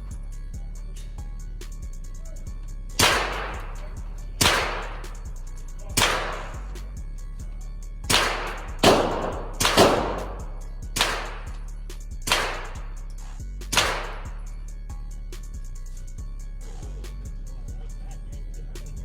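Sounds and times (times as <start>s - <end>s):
background music with low beat: 0.0s - 19.0s
pistol shots with echo: 3.0s - 5.3s, 5.9s - 6.8s, 8.1s - 11.6s, 12.3s - 12.9s, 13.7s - 14.4s.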